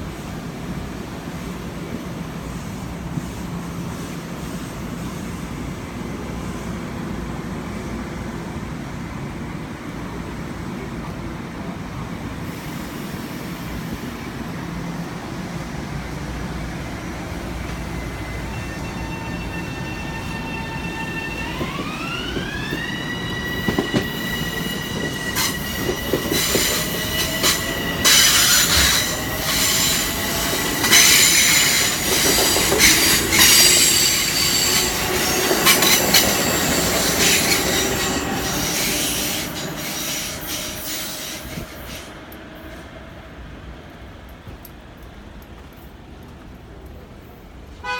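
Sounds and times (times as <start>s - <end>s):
train rumble: 0.0s - 47.9s
train wheels squealing: 17.1s - 42.8s.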